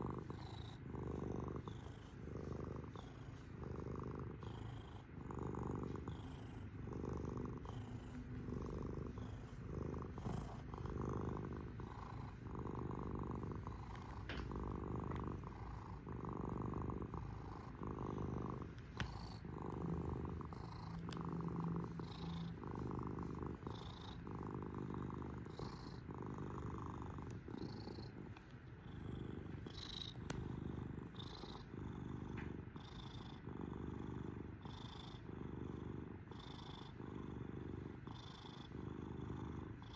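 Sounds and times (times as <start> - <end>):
cat purring: 0.0 - 39.9.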